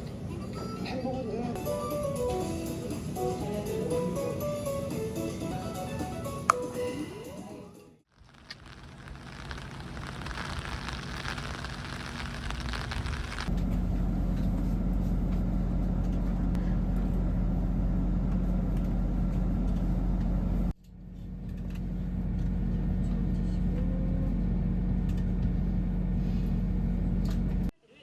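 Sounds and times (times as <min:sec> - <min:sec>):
low mechanical hum: 0:08.2 - 0:27.7.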